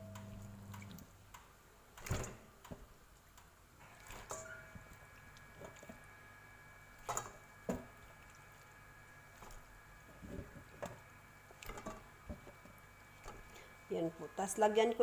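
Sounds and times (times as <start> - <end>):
wet chicken squelching: 3.9 - 6.0.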